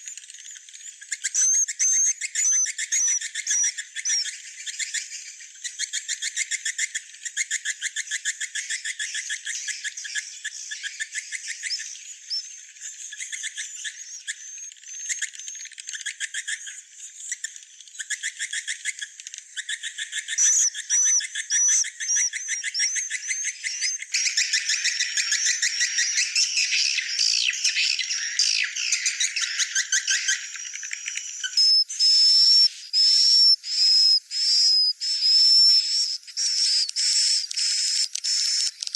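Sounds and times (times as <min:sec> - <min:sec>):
swiftlet twittering calls: 0:19.6 - 0:38.9.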